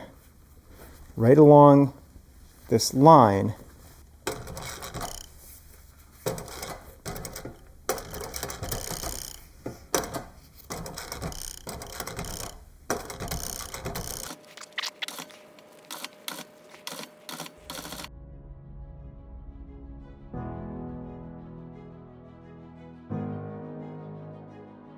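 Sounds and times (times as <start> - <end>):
sewing machine stitching: 10.7 - 18.1
quick clicks: 14.1 - 18.1.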